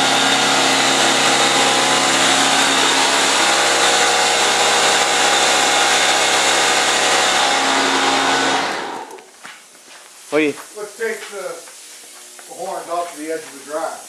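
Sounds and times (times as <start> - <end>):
hiss of rushing air: 10.0 - 14.0.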